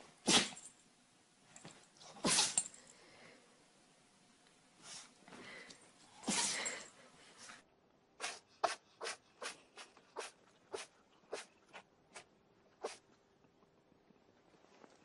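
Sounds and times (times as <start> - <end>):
animal sneezing: 0.2 - 0.7, 2.1 - 2.7, 6.2 - 6.8, 8.2 - 13.0.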